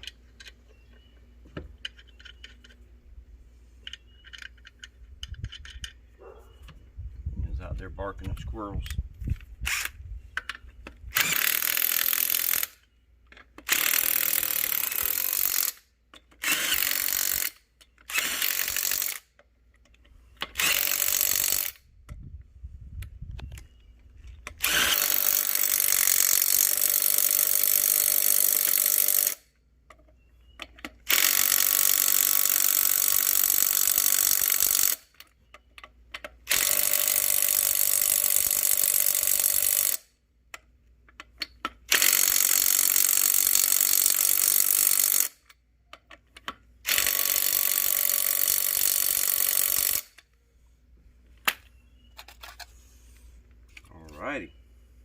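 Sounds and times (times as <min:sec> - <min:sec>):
power tool driving bolts: 0:09.6 - 0:21.8, 0:24.4 - 0:29.5, 0:30.6 - 0:35.3, 0:36.1 - 0:40.1, 0:41.1 - 0:50.3.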